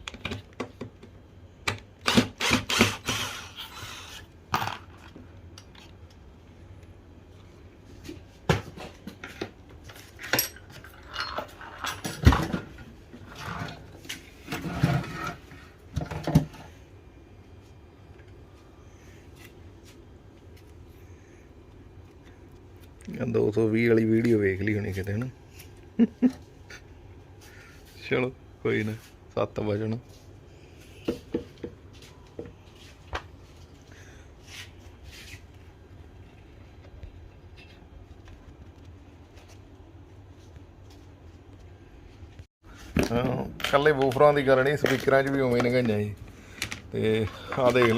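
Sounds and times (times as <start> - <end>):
low steady hum: 0.0 - 47.9
hard objects clinking and clattering: 46.5 - 47.9.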